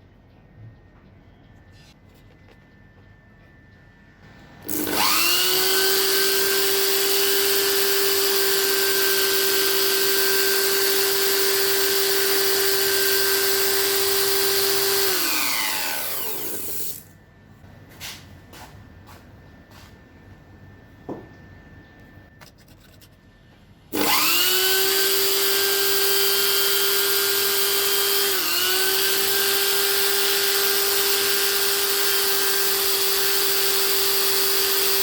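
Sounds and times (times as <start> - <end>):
small electric motor whining: 4.6 - 17.0, 23.9 - 35.0.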